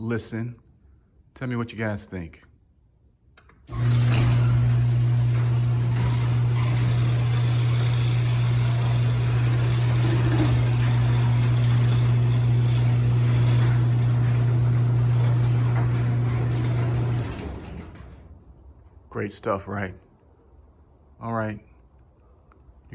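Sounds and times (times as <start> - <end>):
electric garage door opener humming: 3.6 - 19.0.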